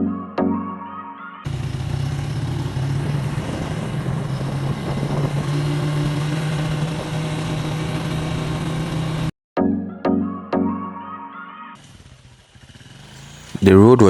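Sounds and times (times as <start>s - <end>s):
motorcycle engine running: 1.5s - 9.3s, 11.8s - 14.0s.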